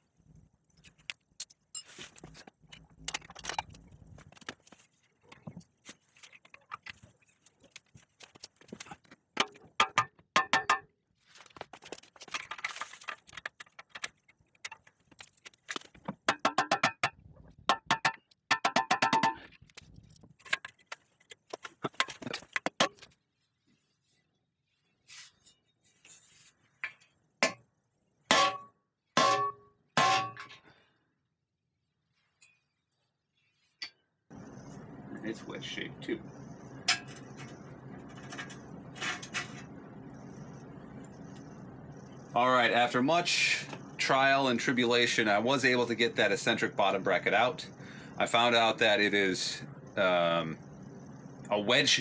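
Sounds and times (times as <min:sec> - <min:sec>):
hammer striking metal: 0:28.3 - 0:30.5.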